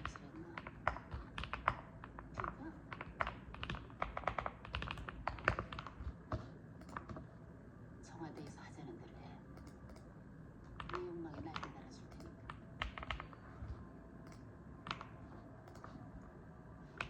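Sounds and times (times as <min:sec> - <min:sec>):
mechanical keyboard typing: 0:00.0 - 0:07.2, 0:10.8 - 0:13.4, 0:14.2 - 0:16.0.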